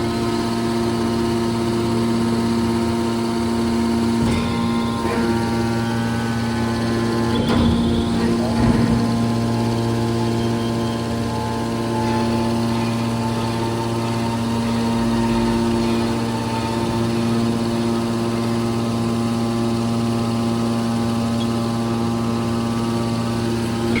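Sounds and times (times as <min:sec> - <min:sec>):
hydraulic motor and pump humming: 0:00.0 - 0:24.0.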